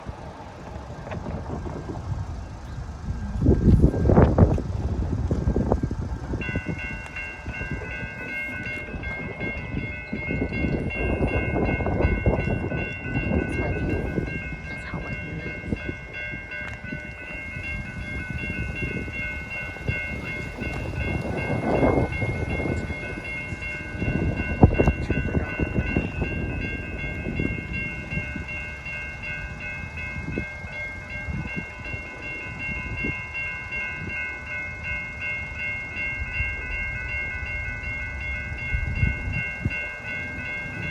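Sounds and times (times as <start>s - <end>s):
crossing warning bells ringing: 0.0s - 40.9s
passenger train rumbling past: 0.0s - 40.9s.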